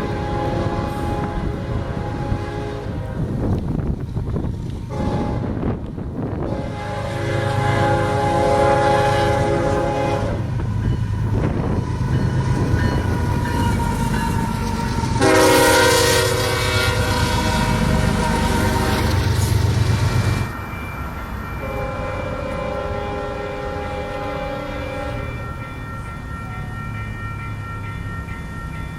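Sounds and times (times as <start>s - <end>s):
locomotive air horn blasts: 0.0s - 3.4s, 4.9s - 5.7s, 6.4s - 10.6s, 13.6s - 20.5s, 21.6s - 25.3s
diesel locomotive running: 0.0s - 28.9s
train rolling: 0.0s - 28.9s.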